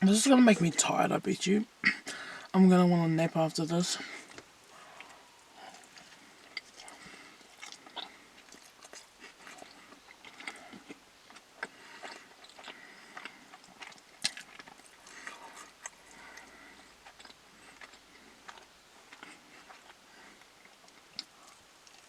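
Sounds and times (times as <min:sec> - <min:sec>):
food crunching: 0:04.0 - 0:22.0
person chewing and biting food: 0:04.2 - 0:22.0.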